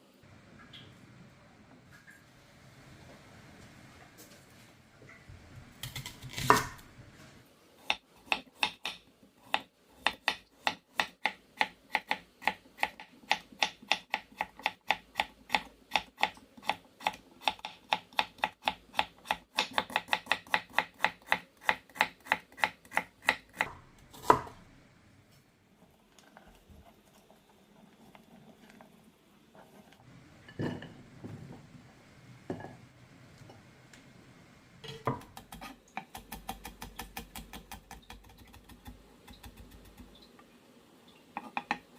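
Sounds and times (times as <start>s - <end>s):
knife chopping on cutting board: 5.8s - 6.8s, 8.3s - 24.6s.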